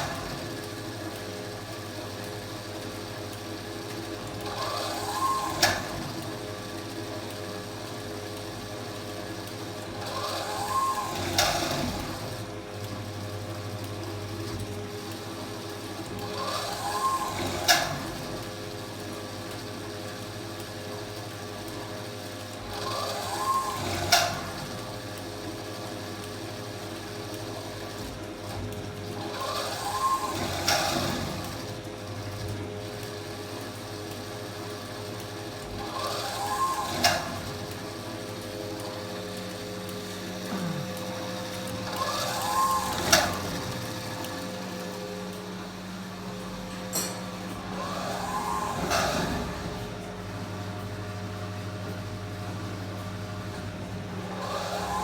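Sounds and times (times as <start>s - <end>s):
motor whir rising and falling: 40.2s - 46.7s, 47.3s - 50.1s, 53.6s - 55.0s.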